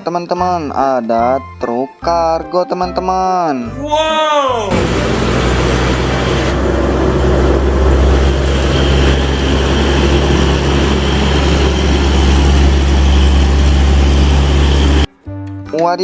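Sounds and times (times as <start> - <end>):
heavy vehicle engine rumbling: 4.7 - 15.1.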